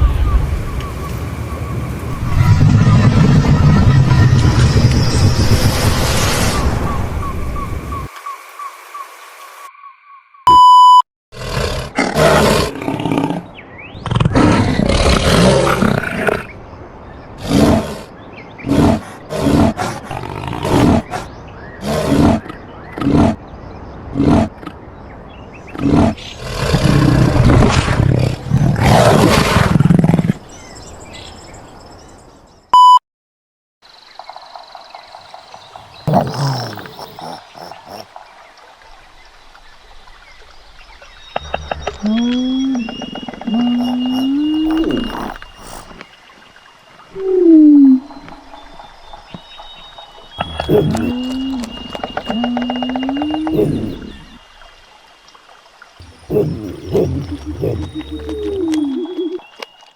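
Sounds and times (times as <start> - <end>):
short electronic beep: 10.5 - 11.0, 32.8 - 33.0
dinosaur roars: 36.0 - 38.1, 41.4 - 46.0, 50.4 - 54.4, 56.0 - 59.4.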